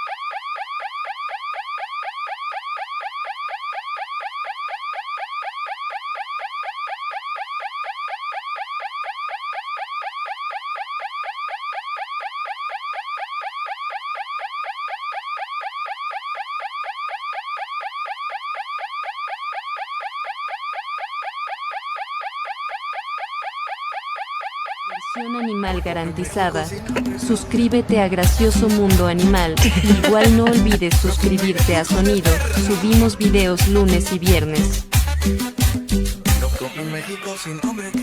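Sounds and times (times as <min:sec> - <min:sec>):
electronic alarm siren: 0:00.0 - 0:27.4.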